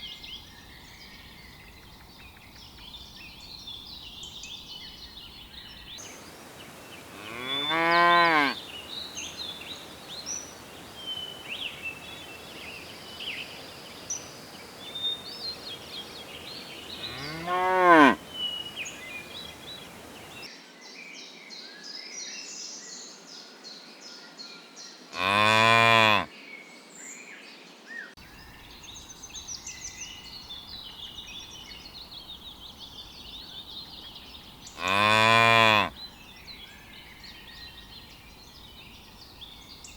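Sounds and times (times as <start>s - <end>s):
small birds chirping: 0.0s - 20.5s
cattle mooing: 7.0s - 8.7s, 16.8s - 18.4s, 25.2s - 26.3s, 34.8s - 35.9s.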